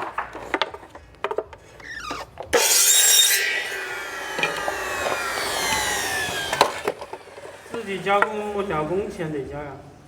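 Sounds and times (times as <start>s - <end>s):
power saw cutting wood: 2.6s - 8.8s.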